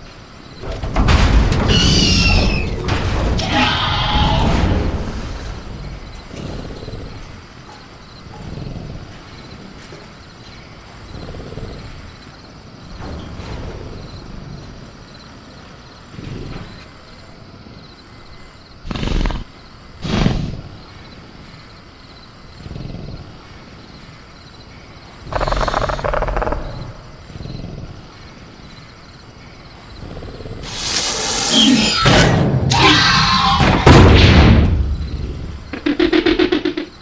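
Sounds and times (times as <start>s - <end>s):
night crickets: 0.0s - 37.0s
creature growls and snorts: 3.3s - 7.6s, 8.2s - 9.8s, 11.0s - 12.4s, 16.0s - 17.1s, 18.8s - 20.8s, 22.4s - 23.8s, 25.2s - 28.6s, 29.9s - 34.0s.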